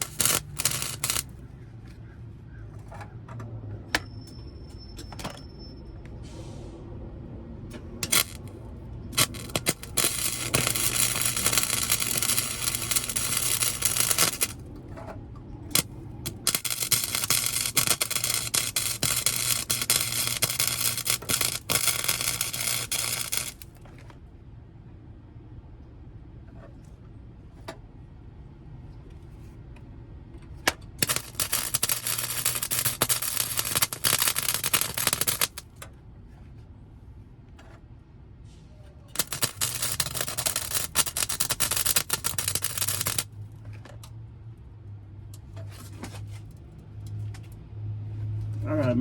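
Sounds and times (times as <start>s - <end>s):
welding arc crackling: 0.0s - 1.4s, 8.0s - 8.5s, 9.1s - 14.6s, 15.7s - 23.8s, 31.0s - 35.7s, 39.2s - 43.3s.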